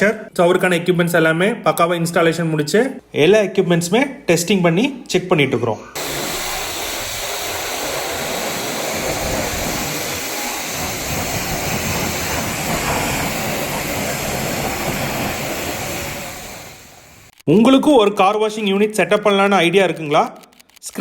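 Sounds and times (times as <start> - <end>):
car wash machine noise: 6.0 - 17.3.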